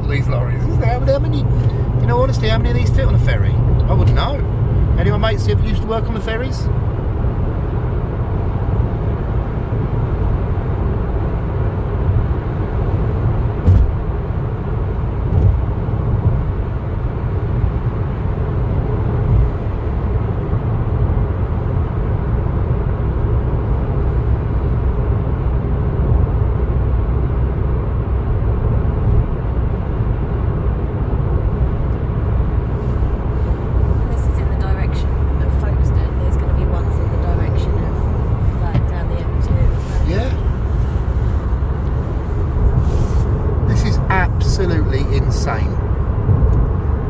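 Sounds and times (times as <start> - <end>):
car engine and road rumble: 0.0 - 47.0
soft bumps: 37.2 - 44.3.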